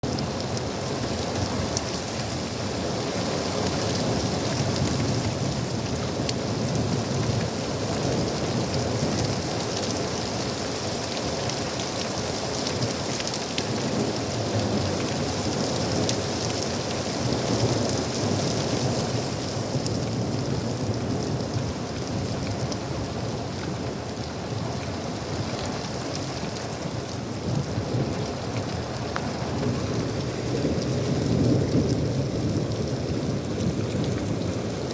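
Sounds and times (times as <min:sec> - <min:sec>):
steady rain falling: 0:00.0 - 0:34.9
rain drop ticks: 0:28.1 - 0:34.9.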